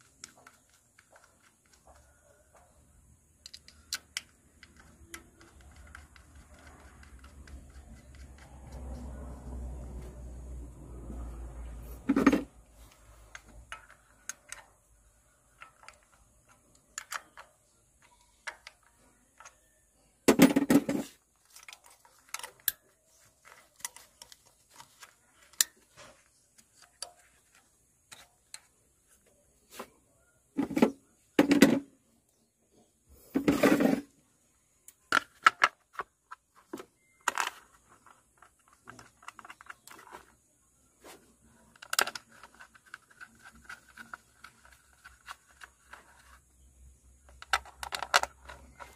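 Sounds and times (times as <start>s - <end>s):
hand tools and metal parts clinking: 11.9s - 29.9s.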